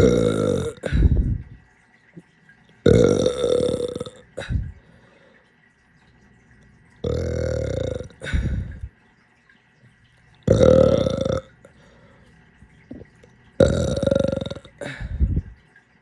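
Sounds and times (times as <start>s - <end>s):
person burping: 0.0s - 1.6s, 2.8s - 4.7s, 7.0s - 8.9s, 10.5s - 11.7s, 13.6s - 15.6s.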